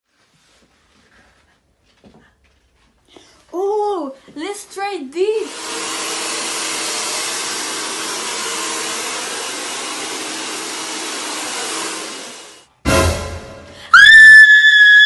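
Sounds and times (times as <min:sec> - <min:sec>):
hair dryer blowing: 0:05.2 - 0:12.6.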